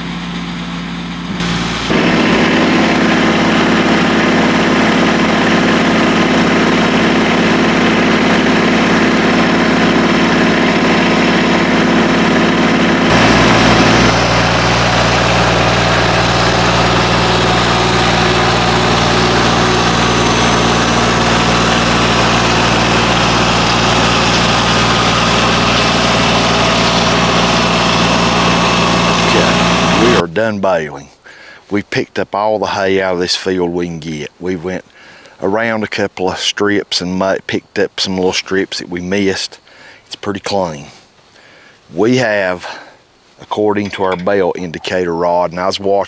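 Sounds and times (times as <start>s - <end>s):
tractor engine running: 0.0s - 30.2s, 43.5s - 45.0s.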